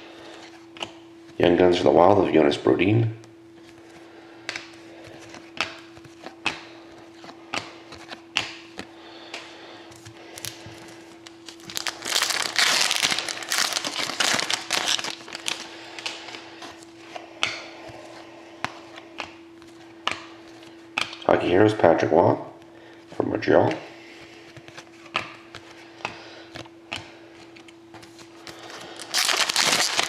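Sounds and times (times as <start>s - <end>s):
cards clicking and snapping: 7.5s - 9.5s, 29.0s - 30.0s
wrapper crinkling and tearing: 11.2s - 16.4s, 28.6s - 30.0s.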